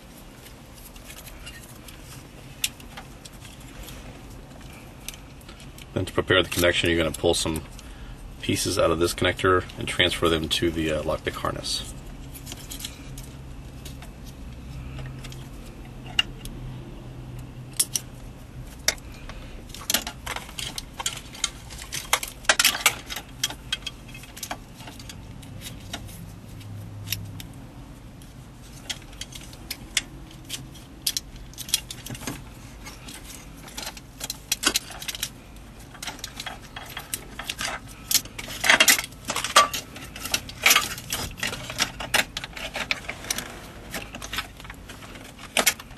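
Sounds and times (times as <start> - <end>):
light metallic-plastic rattling: 28.3 - 45.9.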